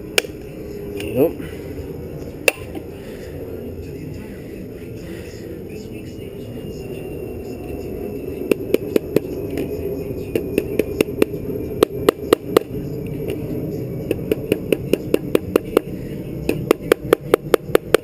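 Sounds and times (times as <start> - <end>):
steady low hum: 0.0 - 18.0
sharp taps on hard surface: 14.1 - 15.9.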